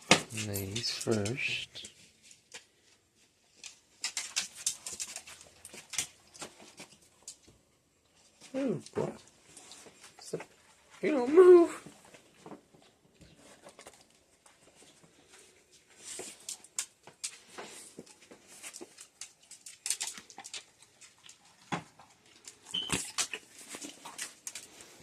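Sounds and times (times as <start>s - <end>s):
dog crunching hard treats: 3.5s - 7.6s, 13.4s - 25.0s.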